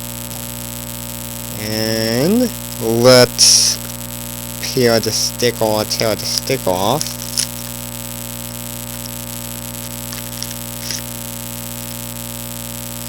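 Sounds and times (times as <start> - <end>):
electrical mains hum and hiss: 0.0 - 13.0
faint scratchy sounds: 4.6 - 11.4.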